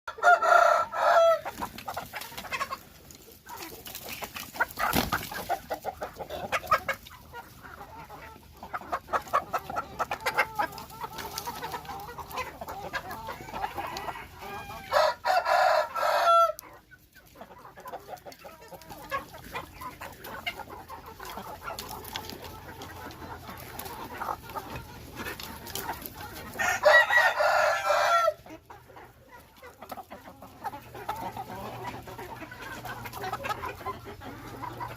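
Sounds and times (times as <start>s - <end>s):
rooster crowing: 0.1s - 1.4s, 13.4s - 16.6s, 26.6s - 28.4s
chickens clucking: 0.1s - 34.9s.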